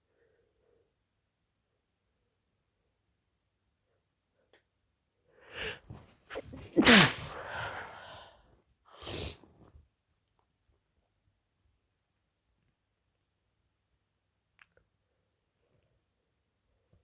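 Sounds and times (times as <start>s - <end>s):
woman sneezing: 5.6s - 7.9s.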